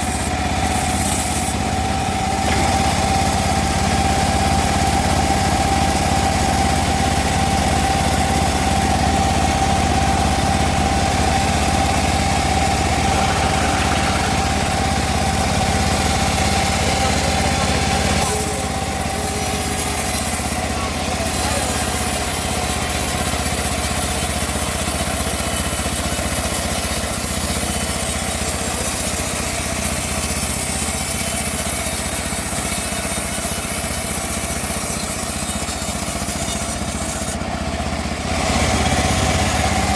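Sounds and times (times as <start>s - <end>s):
high machine whine: 0.0s - 24.8s
bandsaw mill sawing wood: 0.0s - 39.9s.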